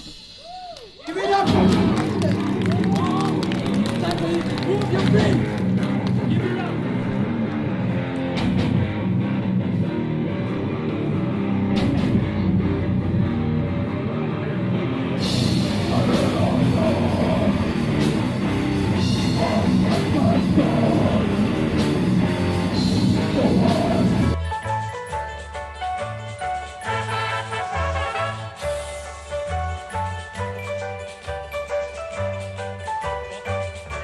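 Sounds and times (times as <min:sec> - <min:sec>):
cymbals: 0:00.0 - 0:01.5
metal band playing live: 0:01.2 - 0:24.4.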